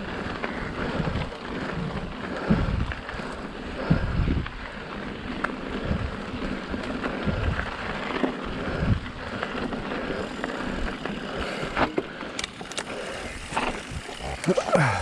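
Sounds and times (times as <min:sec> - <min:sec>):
wind noise on microphone: 0:00.0 - 0:04.8, 0:05.6 - 0:09.4
mountain bike rolling on dirt: 0:00.0 - 0:15.0
bike rattle: 0:05.8 - 0:15.0.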